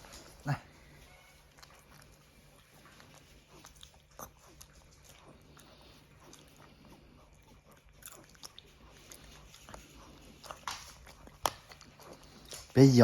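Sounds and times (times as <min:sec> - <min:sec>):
dog chewing and smacking: 0:00.0 - 0:13.0
teeth clicking on syringe: 0:10.4 - 0:12.8.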